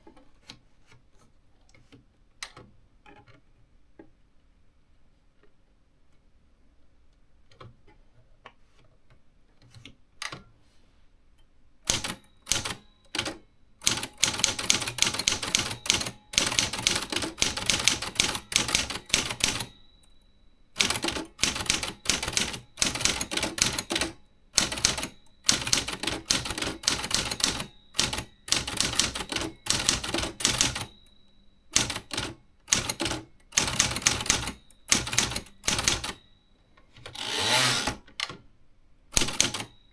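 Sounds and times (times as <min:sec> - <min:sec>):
typewriter typing: 0:11.9 - 0:19.8, 0:20.8 - 0:31.0, 0:31.7 - 0:36.2, 0:37.0 - 0:38.4, 0:39.1 - 0:39.8.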